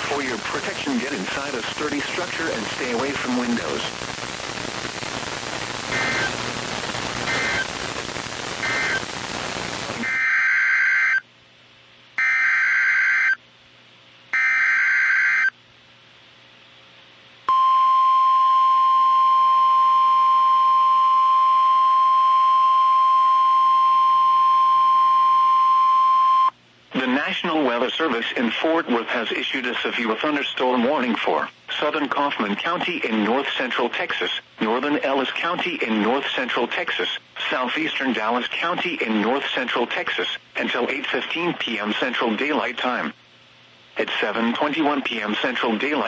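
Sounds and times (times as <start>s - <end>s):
radio static hiss: 0.0s - 10.3s, 26.9s - 46.0s
steady warning alarm tone: 7.3s - 7.7s, 12.2s - 13.4s, 14.4s - 15.5s.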